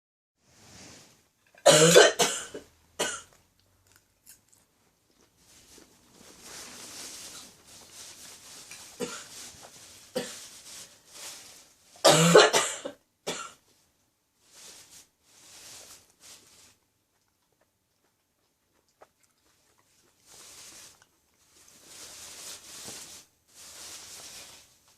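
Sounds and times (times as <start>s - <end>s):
woman coughing: 1.7s - 3.3s, 12.1s - 13.6s.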